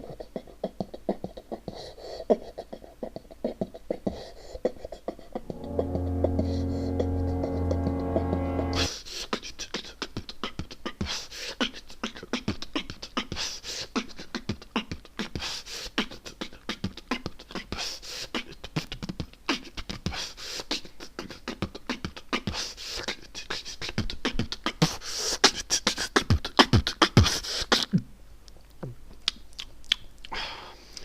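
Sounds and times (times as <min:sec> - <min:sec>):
steady low hum: 0:05.4 - 0:08.9.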